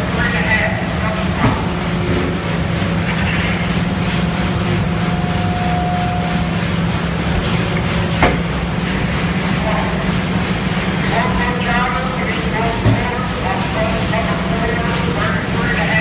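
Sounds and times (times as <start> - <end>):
baler mechanical hum: 0.0 - 16.0
short machine whine: 1.8 - 9.6.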